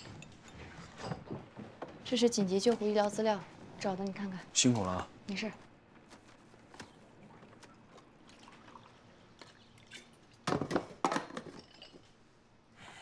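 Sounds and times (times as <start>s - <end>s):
liquid pouring into cup: 7.9s - 10.4s.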